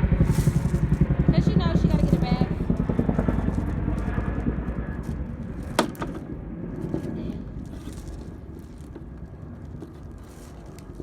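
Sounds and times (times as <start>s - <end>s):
wind buffeting microphone: 0.0s - 7.6s.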